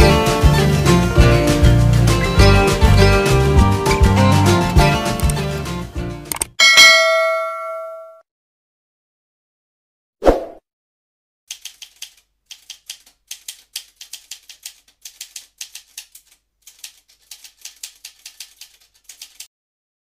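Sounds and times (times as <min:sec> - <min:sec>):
typewriter keys clacking: 0:11.5 - 0:19.5.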